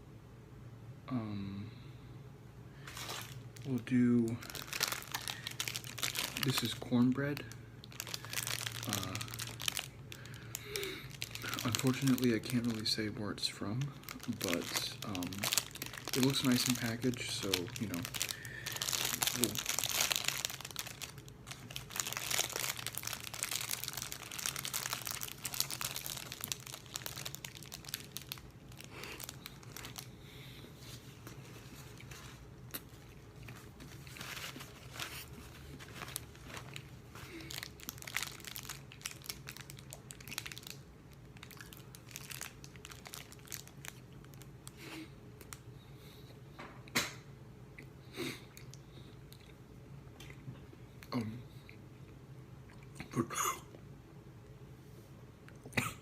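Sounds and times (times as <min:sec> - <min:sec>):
plastic wrapper crinkling: 0:02.8 - 0:30.2, 0:30.8 - 0:44.8.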